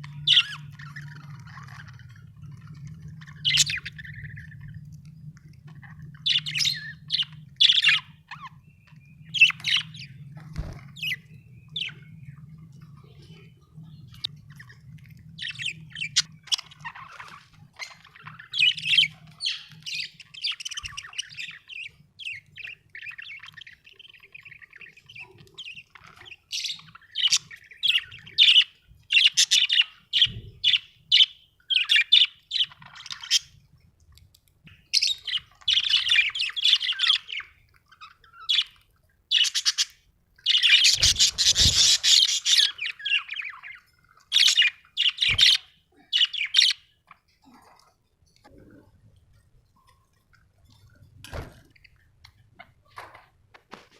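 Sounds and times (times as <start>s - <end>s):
budgerigars chirping and warbling: 0.0s - 33.7s, 34.6s - 47.7s
budgerigars squawking: 39.3s - 43.7s.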